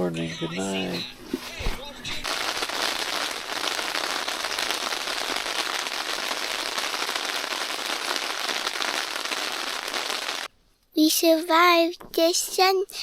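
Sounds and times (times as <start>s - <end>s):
heavy rain drumming on a tent: 2.2s - 10.5s.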